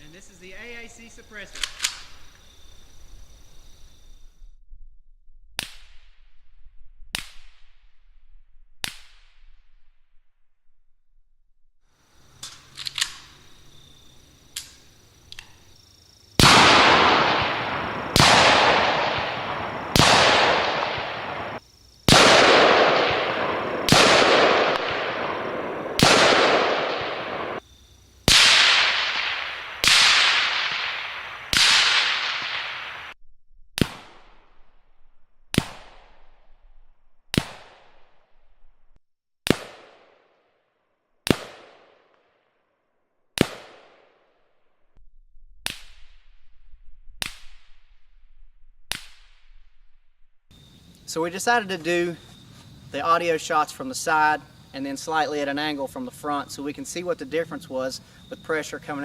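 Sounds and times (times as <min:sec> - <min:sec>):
rifle single shots echoing: 0:16.4 - 0:27.6, 0:28.3 - 0:33.2.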